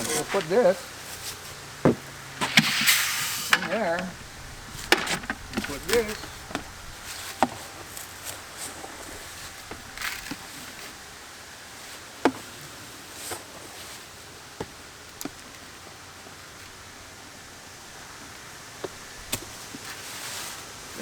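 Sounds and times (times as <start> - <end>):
faint steady hiss: 0.0 - 21.0
feed scooped into a bucket: 2.4 - 4.1.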